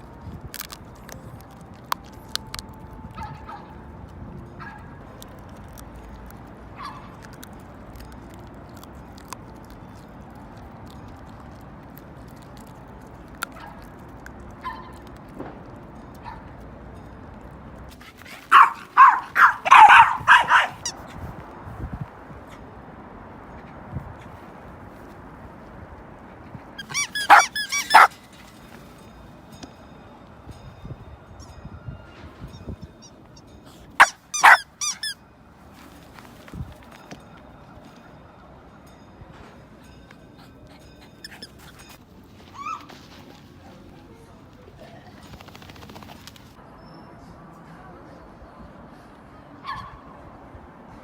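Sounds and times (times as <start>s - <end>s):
dog chewing with crunches: 0.2s - 2.9s, 5.1s - 16.2s, 17.8s - 21.2s, 26.8s - 29.1s, 33.7s - 37.1s, 40.4s - 42.1s
dog yipping: 6.8s - 7.3s, 14.6s - 15.1s, 18.2s - 21.2s, 26.8s - 28.2s, 34.0s - 35.2s, 40.7s - 43.2s, 49.6s - 50.0s
dog whining: 26.8s - 28.2s, 34.0s - 35.2s, 40.4s - 42.9s.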